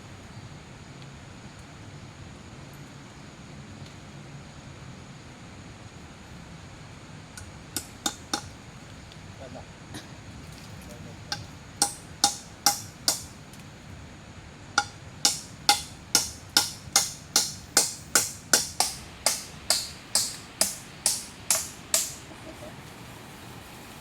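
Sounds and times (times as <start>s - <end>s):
hand tool striking wood: 7.4s - 8.6s, 11.3s - 13.4s, 14.8s - 22.3s.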